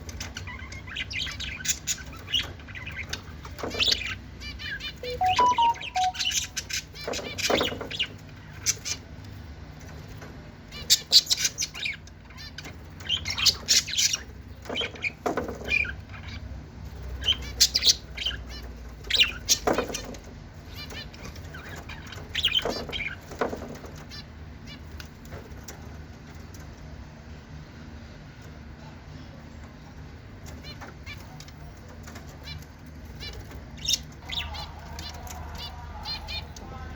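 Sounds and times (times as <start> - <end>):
birds chirping and squawking: 32.1 - 36.6.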